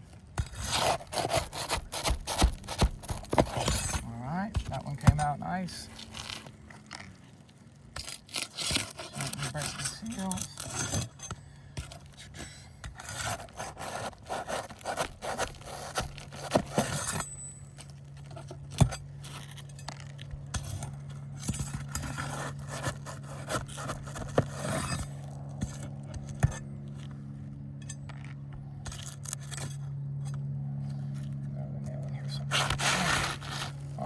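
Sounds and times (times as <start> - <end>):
pry bar scraping shingles: 0.0 - 27.2, 32.4 - 34.0.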